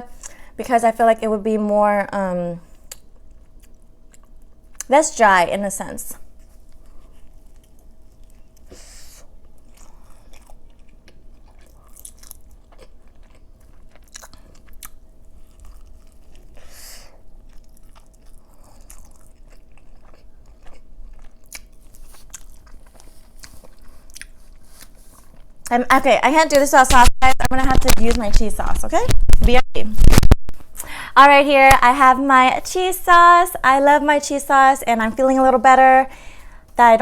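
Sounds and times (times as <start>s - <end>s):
chewing food: 2.7s - 4.9s, 6.4s - 8.7s, 9.3s - 25.8s.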